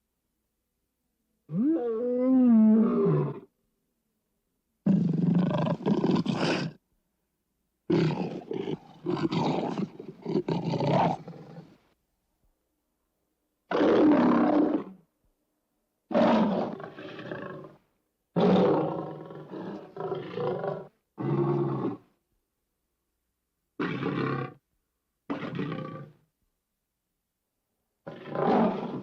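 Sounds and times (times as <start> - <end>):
lion roars: 4.9 - 6.8, 7.9 - 11.7, 13.7 - 15.0, 16.1 - 17.8, 18.4 - 22.0, 25.3 - 26.2, 28.0 - 29.0.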